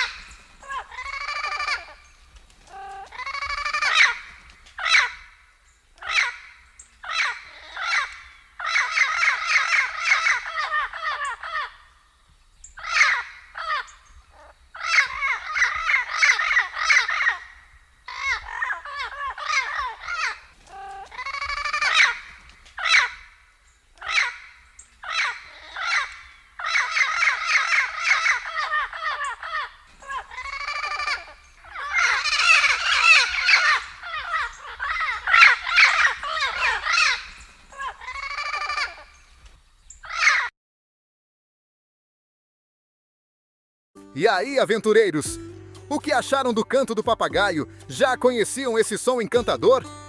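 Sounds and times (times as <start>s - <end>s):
parrot calling: 0.0s - 5.4s, 6.0s - 11.9s, 12.8s - 23.3s, 24.0s - 39.2s, 40.0s - 40.5s.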